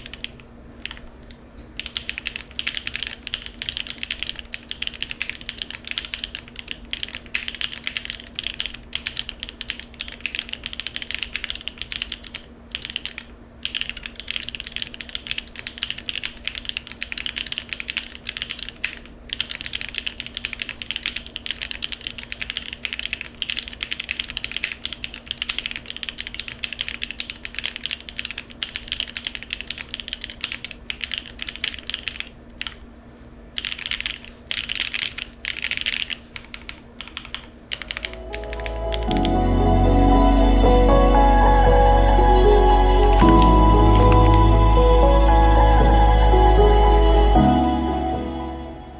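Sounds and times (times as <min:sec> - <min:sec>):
fast mechanical keyboard typing: 0:00.0 - 0:32.8, 0:33.6 - 0:39.4.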